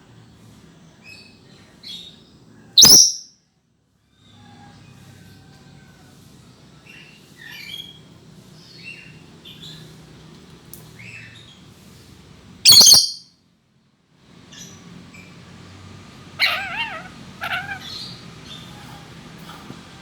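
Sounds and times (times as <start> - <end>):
parrot chirping and squawking: 2.8 - 3.2, 12.7 - 13.2, 16.4 - 19.8.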